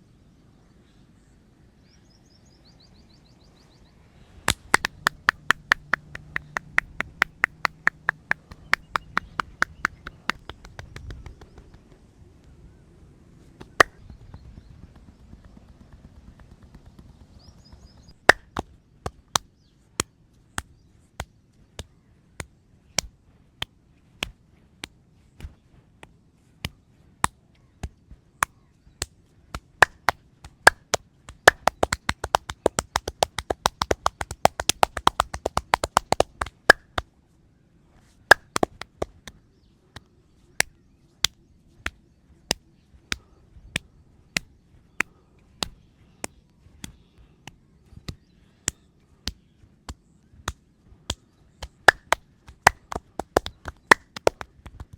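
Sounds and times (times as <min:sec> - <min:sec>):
hands striking a head: 0:04.5 - 0:11.5, 0:24.2 - 0:37.0, 0:38.3 - 0:39.4, 0:44.4 - 0:54.9.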